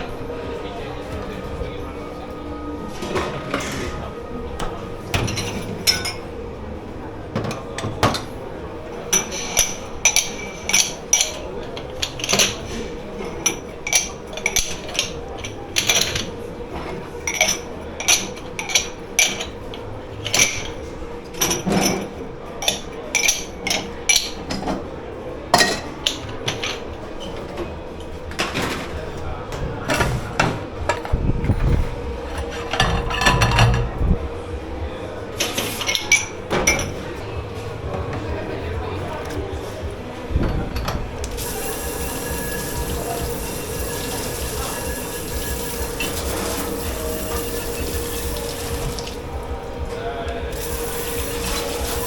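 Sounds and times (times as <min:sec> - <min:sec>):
dishes and cutlery clattering: 0:02.9 - 0:06.3, 0:08.9 - 0:24.9, 0:25.5 - 0:27.7, 0:29.8 - 0:34.1, 0:35.4 - 0:37.1, 0:40.4 - 0:49.4, 0:50.5 - 0:52.0.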